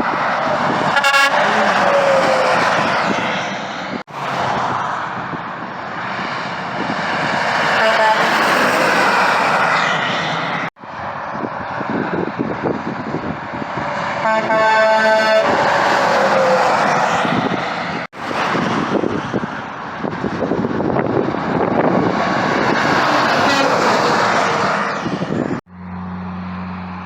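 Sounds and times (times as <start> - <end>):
heavy highway traffic roar: 0.0 - 27.0
truck air horn blast: 0.9 - 2.8, 7.6 - 8.8, 14.2 - 15.6, 23.0 - 24.3
falling pitched tone of passing vehicle: 22.0 - 27.0.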